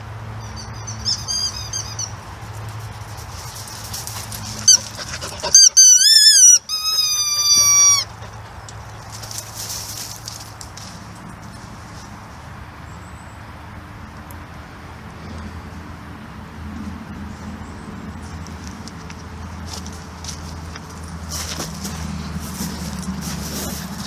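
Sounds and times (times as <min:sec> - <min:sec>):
high-pitched squeaking: 0:00.5 - 0:02.2, 0:04.5 - 0:08.1.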